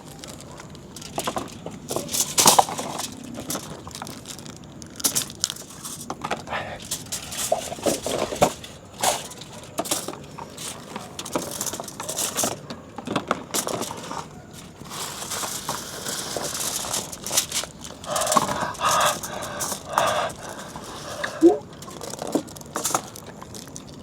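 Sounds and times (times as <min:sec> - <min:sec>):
plastic packaging crinkling: 0:00.0 - 0:06.1, 0:13.4 - 0:24.0.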